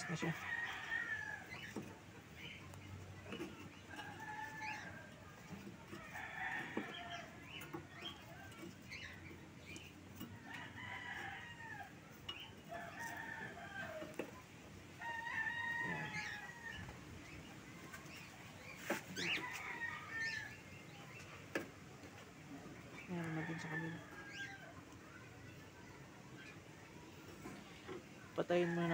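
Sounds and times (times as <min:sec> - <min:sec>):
rooster crowing: 0:15.0 - 0:17.0.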